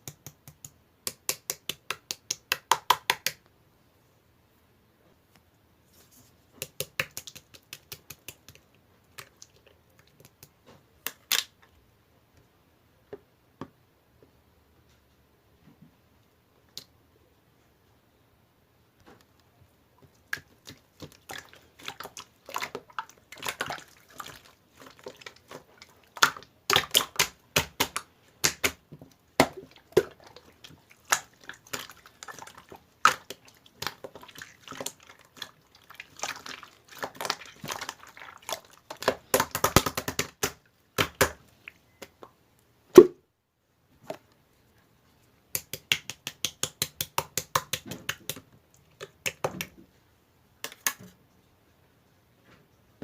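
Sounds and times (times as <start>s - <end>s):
slime squishing wet clicks: 20.2s - 28.8s, 29.4s - 42.2s
slime popping: 20.2s - 41.4s.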